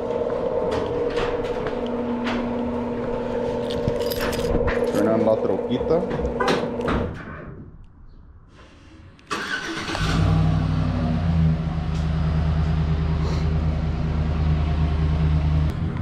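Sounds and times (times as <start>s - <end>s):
truck engine cranking and idling: 9.2s - 16.0s.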